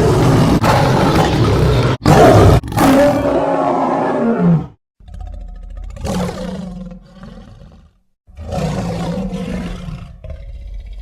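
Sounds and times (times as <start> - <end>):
rough monster roars: 0.0 - 4.8, 6.0 - 11.0.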